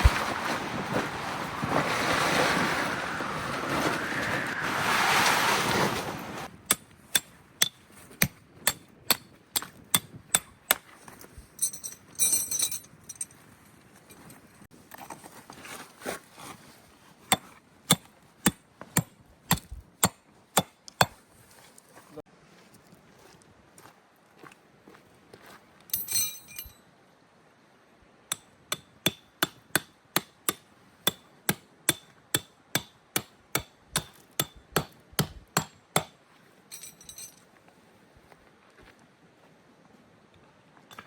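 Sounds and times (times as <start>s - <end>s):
rushing wind: 0.0s - 6.7s.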